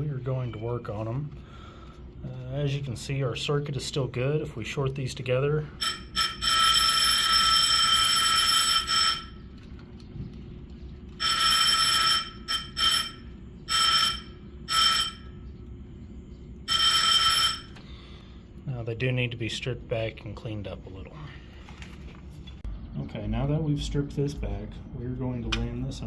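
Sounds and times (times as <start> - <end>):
fire alarm bell ringing: 5.6 - 9.5, 11.1 - 15.5, 16.6 - 18.1.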